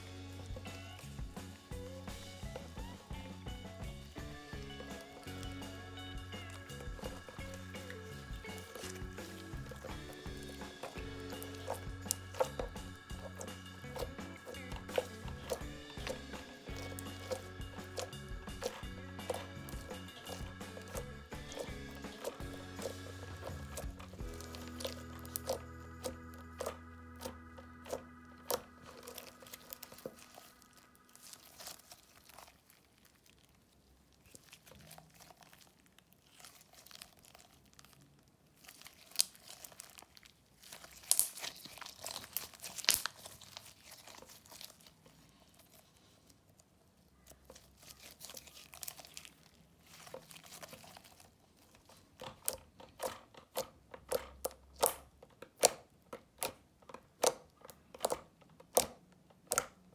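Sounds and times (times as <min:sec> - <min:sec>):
hands squishing slime: 0:00.0 - 0:59.9
slime popping: 0:06.4 - 0:45.8.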